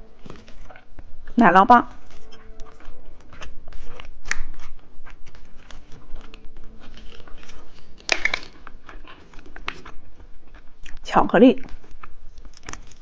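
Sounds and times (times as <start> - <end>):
plastic wrapper crinkling: 0.1 - 11.0, 11.6 - 13.0
plastic wrapper tearing: 2.0 - 11.0, 11.7 - 13.0.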